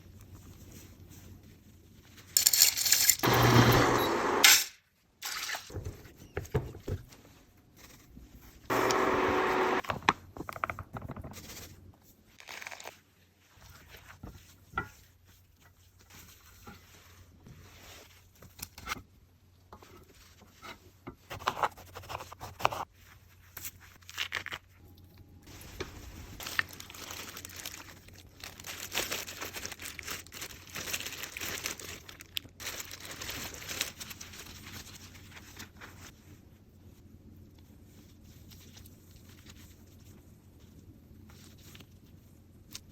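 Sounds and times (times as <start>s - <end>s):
plastic crinkling and tearing: 12.3s - 13.1s, 25.5s - 35.7s.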